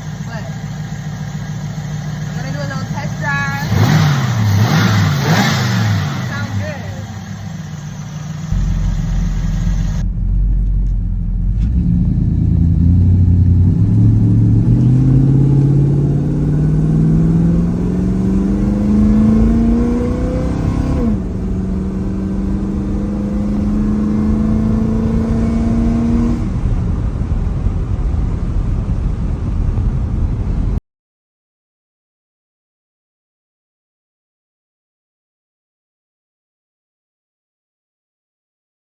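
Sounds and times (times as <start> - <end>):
engine revving: 0.0 - 28.8.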